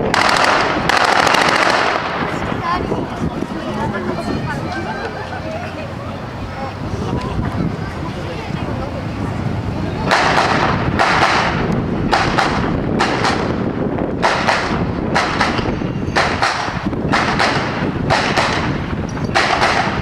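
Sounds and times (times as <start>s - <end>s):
wind rumbling on microphone: 0.0s - 20.0s
rifle gunshots: 0.1s - 2.4s, 10.1s - 13.6s, 14.2s - 18.8s, 19.4s - 20.0s.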